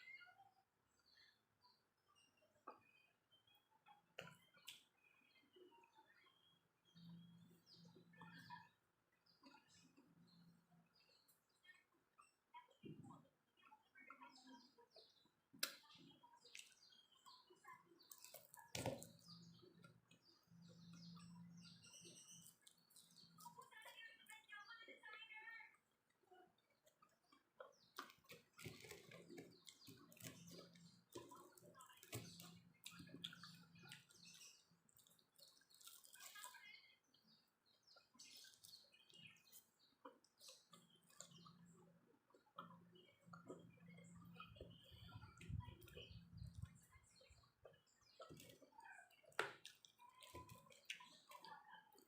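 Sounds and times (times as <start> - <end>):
faint low hum: 0.0 - 52.0
chewing crisp fries: 26.8 - 36.6
person chewing food: 34.8 - 36.4.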